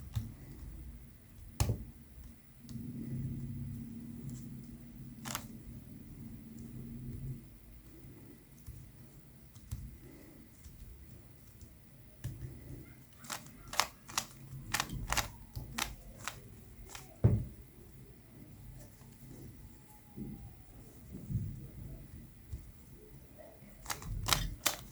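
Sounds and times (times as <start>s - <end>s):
plastic cube layers clacking: 5.2s - 5.5s, 13.2s - 17.2s, 23.8s - 24.9s
low thump: 17.2s - 17.6s.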